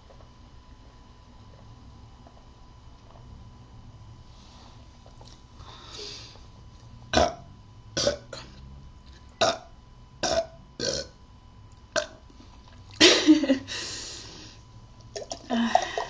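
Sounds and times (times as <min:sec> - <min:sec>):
person burping: 0:07.1 - 0:08.5, 0:09.4 - 0:11.2, 0:12.0 - 0:12.2, 0:15.2 - 0:16.0.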